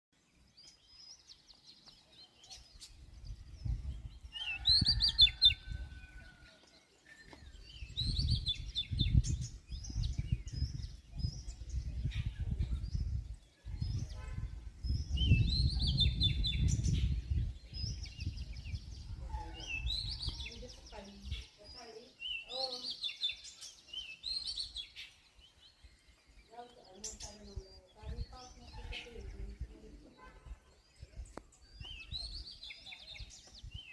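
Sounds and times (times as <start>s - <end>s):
birds chirping and singing: 0.2s - 33.9s.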